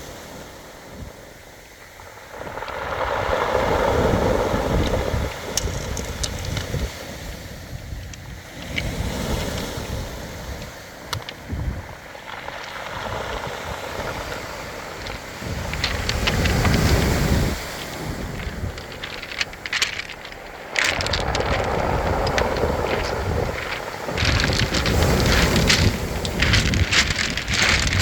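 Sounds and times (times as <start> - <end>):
waves surging on pebbles: 0.0 - 28.0
wind buffeting microphone: 2.0 - 28.0
stones clicking together: 4.8 - 7.0, 7.9 - 9.7, 10.6 - 11.5, 12.2 - 28.0.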